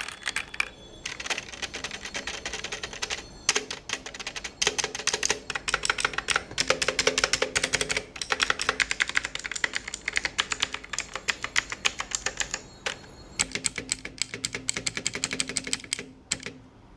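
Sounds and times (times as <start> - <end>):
clicky mechanical keyboard typing: 0.0 - 16.6.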